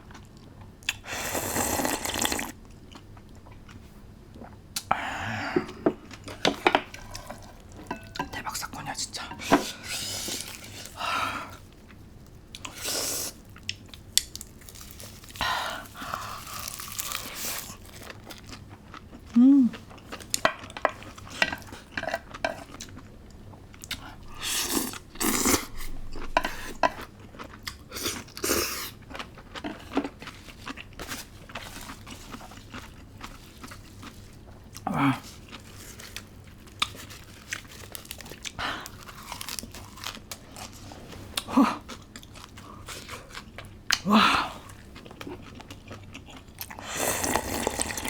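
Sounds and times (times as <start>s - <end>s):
crunchy chewing: 9.8s - 48.0s.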